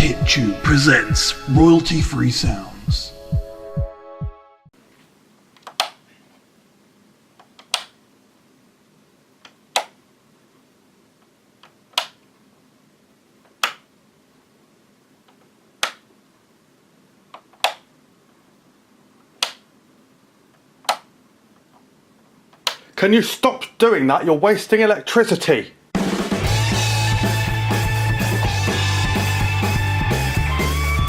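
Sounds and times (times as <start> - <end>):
light switch clicking: 7.6 - 8.0, 11.9 - 12.2, 17.6 - 17.9, 19.4 - 19.6, 20.8 - 21.1.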